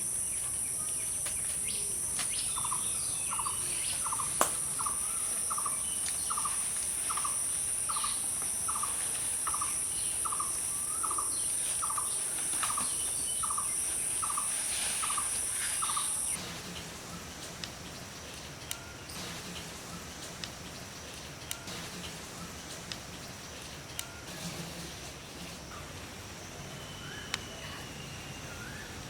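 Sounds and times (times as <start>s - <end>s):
high-pitched insect drone: 0.0s - 16.4s
bird pulsed call: 0.1s - 16.4s, 26.7s - 29.0s.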